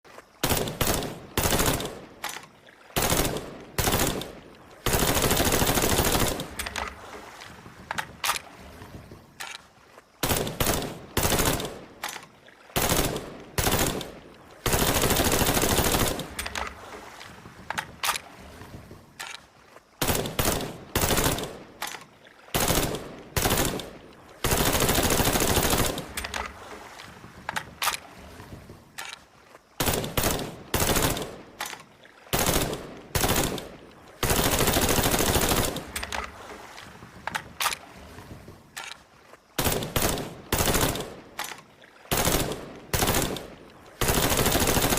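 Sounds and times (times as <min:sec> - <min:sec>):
rifle gunshots and automatic bursts: 0:00.4 - 0:08.6, 0:10.2 - 0:18.4, 0:20.0 - 0:26.8, 0:29.8 - 0:36.6, 0:39.6 - 0:44.9.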